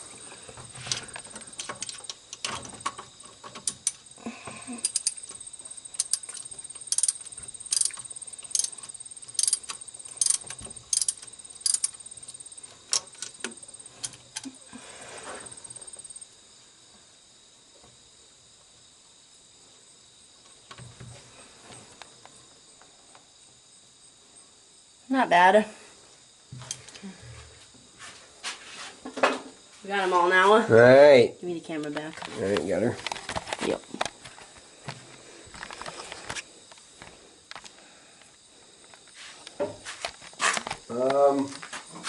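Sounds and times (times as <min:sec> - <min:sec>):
high insect trill: 0:00.0 - 0:42.0
socket wrench ratcheting: 0:04.8 - 0:14.5.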